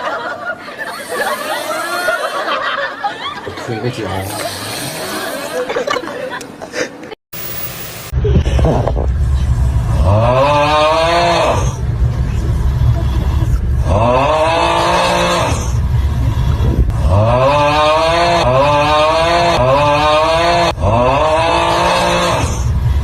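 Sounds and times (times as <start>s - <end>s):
person snoring loudly: 4.2s - 5.6s, 9.8s - 11.8s, 13.2s - 22.8s.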